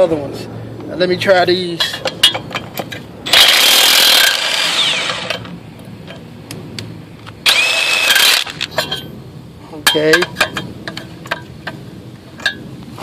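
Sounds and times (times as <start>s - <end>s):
impact wrench hammering lug nuts: 7.5s - 9.0s.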